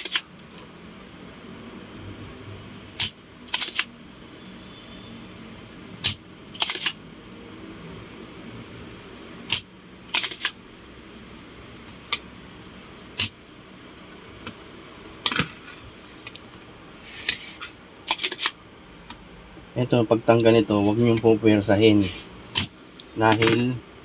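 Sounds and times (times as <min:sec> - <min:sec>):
hand tools clicking and clinking: 0:17.4 - 0:18.6.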